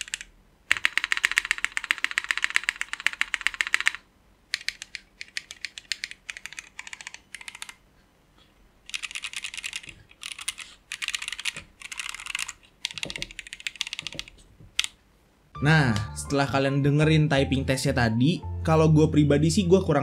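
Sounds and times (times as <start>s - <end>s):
fast typing on mechanical keyboard: 0.0s - 7.8s, 8.9s - 15.0s.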